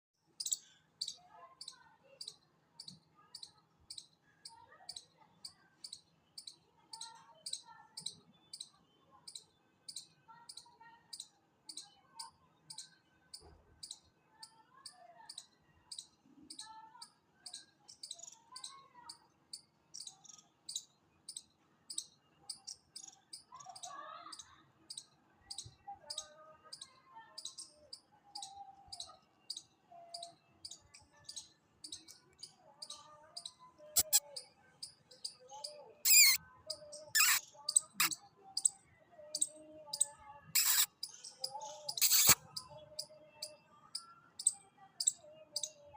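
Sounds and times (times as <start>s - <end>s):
chipmunk chip calls: 27.4s - 43.6s.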